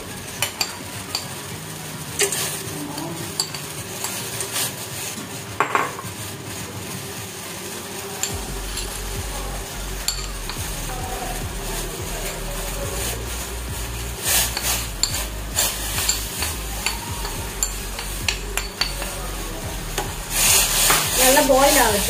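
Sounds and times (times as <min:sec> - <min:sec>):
steady hiss: 0:00.0 - 0:22.0
spoon clinking in cooking pan: 0:00.4 - 0:01.4, 0:03.2 - 0:04.6, 0:14.3 - 0:19.2
low hum: 0:08.3 - 0:22.0.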